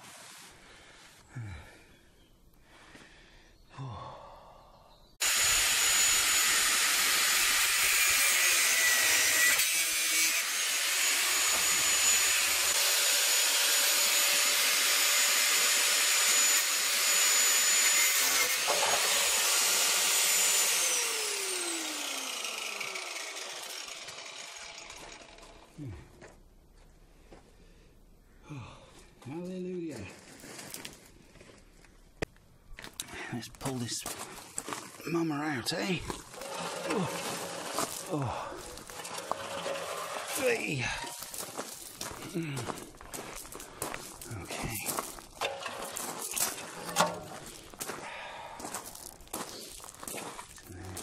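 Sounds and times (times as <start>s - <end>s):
angle grinder cutting steel: 5.2s - 25.8s, 36.2s - 42.1s, 44.8s - 47.8s.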